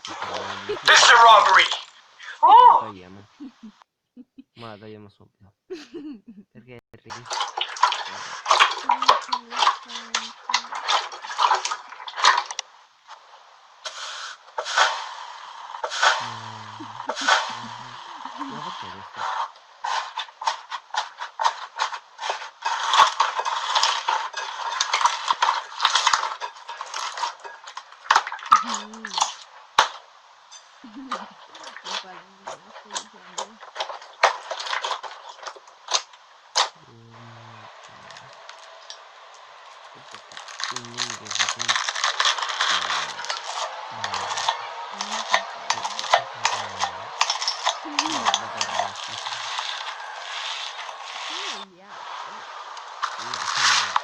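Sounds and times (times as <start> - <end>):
low voice: 0.0 - 3.7, 4.6 - 7.4, 8.0 - 10.9, 16.2 - 19.3, 28.6 - 29.2, 30.8 - 33.6, 36.8 - 38.4, 39.9 - 41.8, 42.6 - 47.2, 47.8 - 49.9, 51.2 - 52.5, 53.1 - 54.0
slime clicking and crackling: 40.0 - 49.9.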